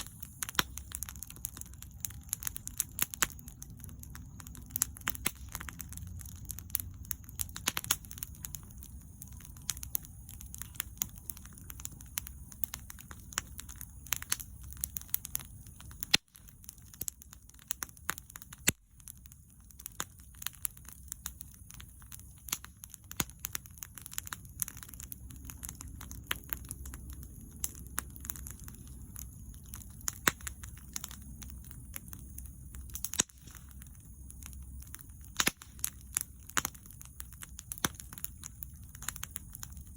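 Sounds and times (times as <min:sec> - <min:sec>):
bonfire crackling: 0:00.0 - 0:39.9
low rumble of flames: 0:00.0 - 0:39.9
sharp pops of burning wood: 0:00.0 - 0:39.9.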